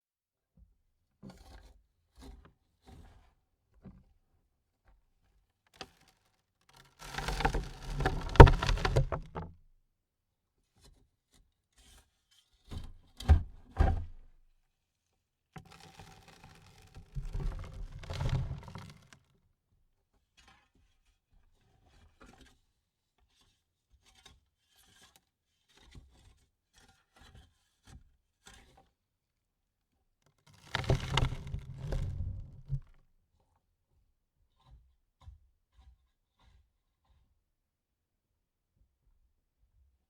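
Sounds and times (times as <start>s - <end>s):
soil pattering: 7.0s - 9.4s, 30.7s - 32.8s.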